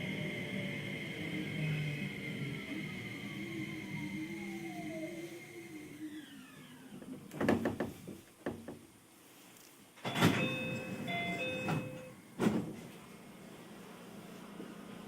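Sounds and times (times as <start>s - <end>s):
door chime alternating tones: 10.0s - 12.2s
train doors sliding open: 10.0s - 13.0s.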